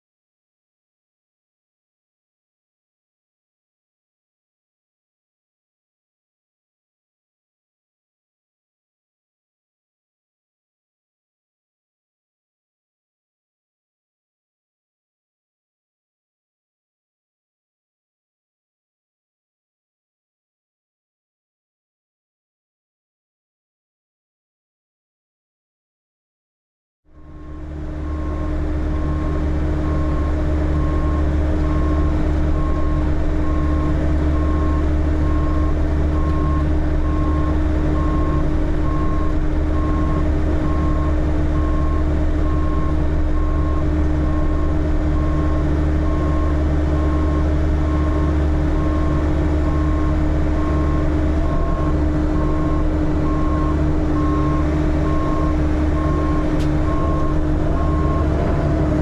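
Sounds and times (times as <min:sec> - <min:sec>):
diesel engine rumbling: 0:27.2 - 0:59.0
high-pitched backup beeping: 0:27.2 - 0:59.0.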